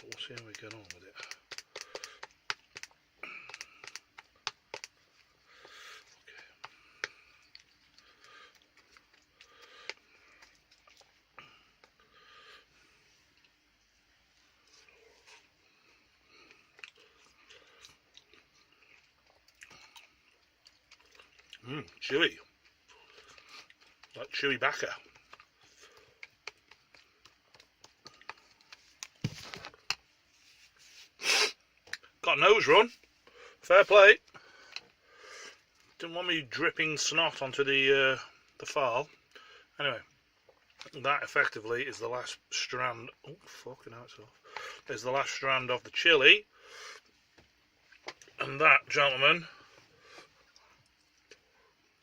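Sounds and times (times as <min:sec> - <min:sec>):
mouth clicks while eating: 0:00.0 - 0:05.0
person chewing: 0:00.0 - 0:13.6, 0:14.4 - 0:24.2, 0:24.9 - 0:30.0
man sniffing: 0:31.2 - 0:31.6.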